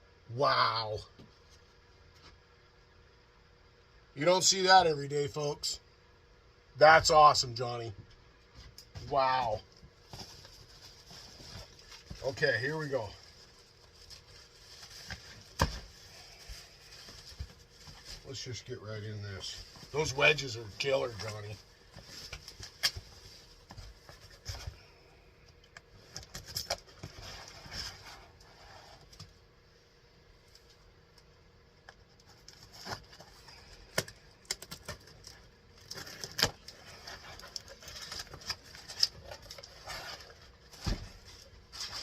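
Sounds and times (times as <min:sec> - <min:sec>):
packaging rustling: 0:10.0 - 0:18.6, 0:32.2 - 0:42.0.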